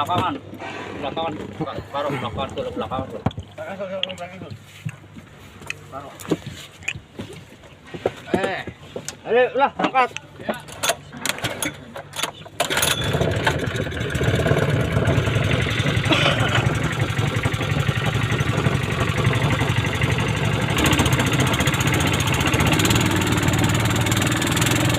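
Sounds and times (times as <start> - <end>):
engine starting and idling: 12.5 - 24.9.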